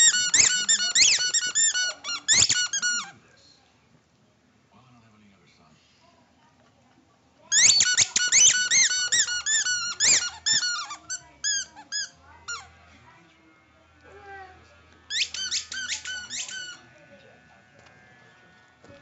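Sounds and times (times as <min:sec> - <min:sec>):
loud high-pitched squeaks: 0:00.0 - 0:03.0, 0:07.5 - 0:12.1, 0:15.1 - 0:16.8.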